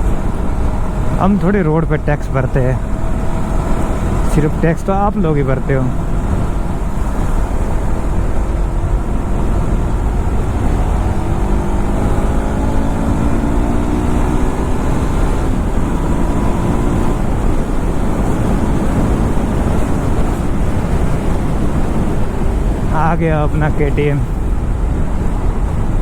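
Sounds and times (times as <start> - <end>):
motorcycle engine accelerating: 0.0 - 26.0
wind rumble on microphone: 0.0 - 26.0.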